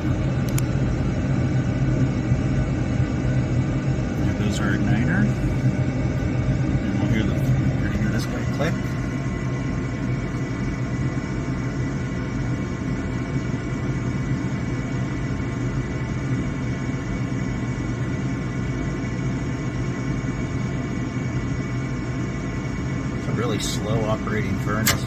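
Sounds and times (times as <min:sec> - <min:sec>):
furnace inducer motor humming: 0:00.0 - 0:25.0.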